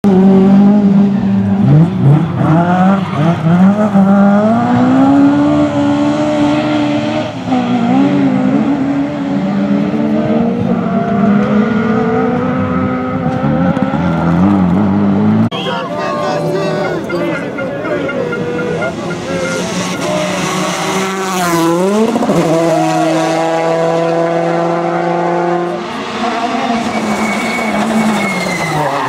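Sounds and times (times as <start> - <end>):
rally car engine revving: 0.0 - 15.6, 16.4 - 29.0.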